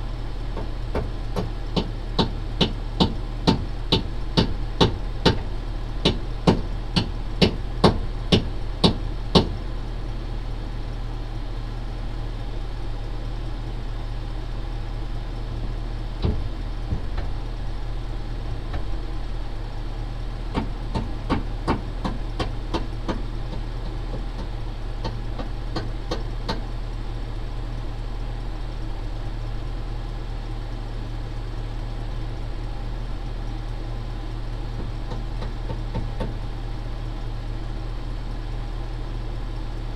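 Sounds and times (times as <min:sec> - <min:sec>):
truck engine idling: 0:00.0 - 0:39.9
sharp knocks and clanks: 0:00.5 - 0:09.6, 0:16.2 - 0:17.5, 0:20.5 - 0:26.7, 0:34.8 - 0:36.4.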